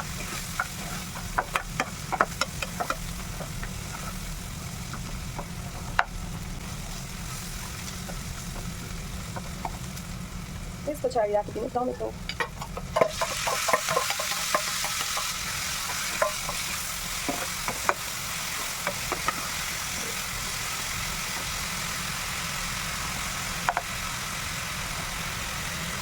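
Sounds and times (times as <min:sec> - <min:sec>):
spatula scraping a pan: 0:00.0 - 0:04.4, 0:12.8 - 0:20.3
food sizzling in hot oil: 0:00.0 - 0:26.0.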